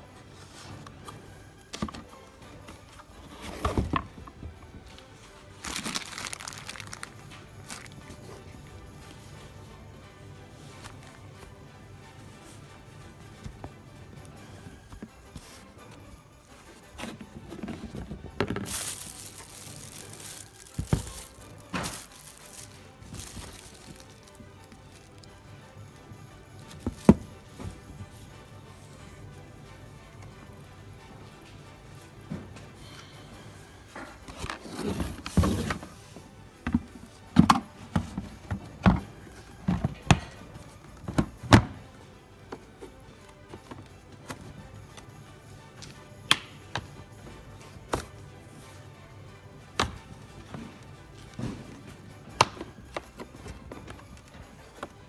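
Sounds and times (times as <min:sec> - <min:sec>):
faint background music: 0:00.0 - 0:55.0
knocks and clicks of handling: 0:01.1 - 0:05.0, 0:36.6 - 0:45.0.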